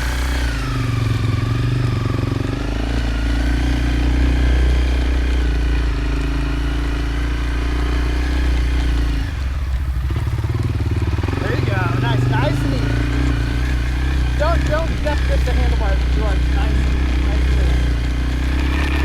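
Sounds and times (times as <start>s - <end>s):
motorcycle engine idling: 0.0s - 19.0s.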